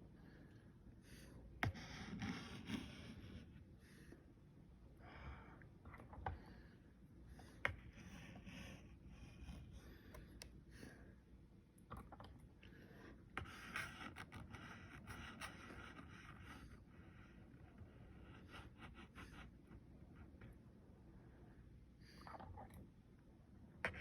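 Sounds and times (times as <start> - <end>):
drawing tool scratching surface: 1.6 - 3.5, 7.7 - 9.7, 13.4 - 19.6.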